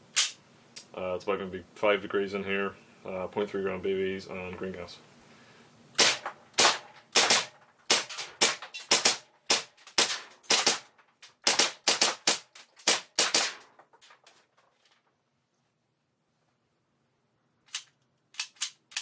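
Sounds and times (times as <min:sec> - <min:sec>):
pistol slide snapping back: 0:00.2 - 0:00.4, 0:17.7 - 0:19.0
airsoft pistol shots: 0:06.0 - 0:13.7.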